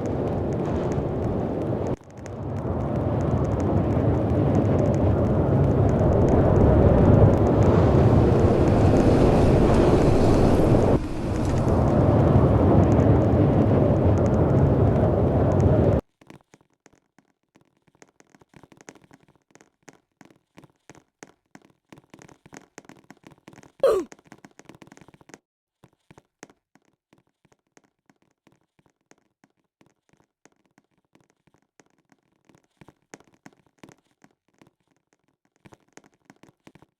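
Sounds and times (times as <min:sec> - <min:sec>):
wind buffeting microphone: 0:00.0 - 0:16.0.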